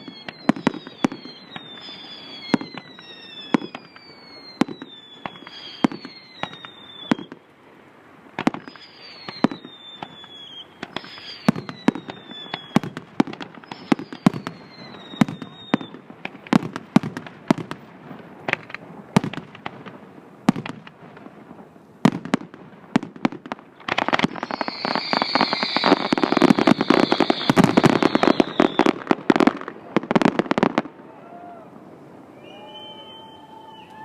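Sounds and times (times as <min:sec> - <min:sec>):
high falling whistle: 0:00.0 - 0:07.3, 0:08.6 - 0:12.8, 0:13.6 - 0:15.9, 0:24.4 - 0:29.0, 0:32.3 - 0:34.0
fireworks bangs: 0:00.0 - 0:34.0.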